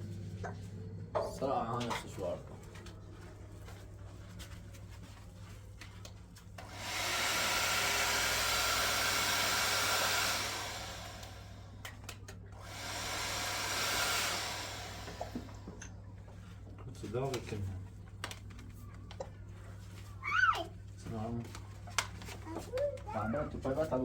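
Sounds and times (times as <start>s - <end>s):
shower head spraying water: 6.6s - 11.8s, 12.6s - 15.8s.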